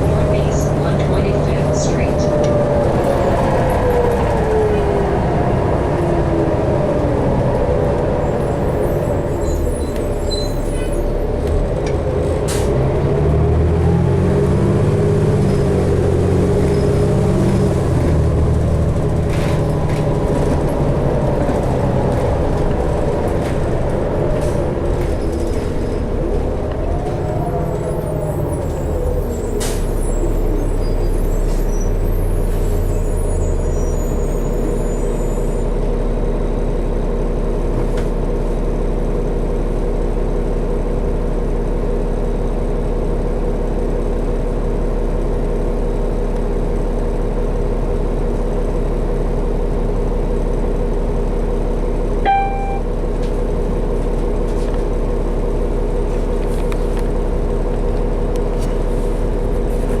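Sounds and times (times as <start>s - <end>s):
bus engine drone: 0.0s - 60.0s
road noise: 0.0s - 60.0s
short electronic beep: 52.2s - 52.9s.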